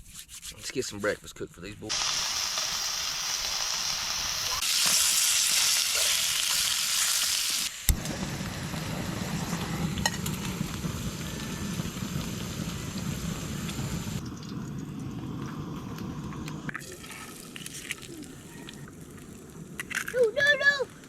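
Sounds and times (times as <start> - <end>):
food sizzling in a pan: 1.9 - 14.6
low rumble: 8.0 - 16.7.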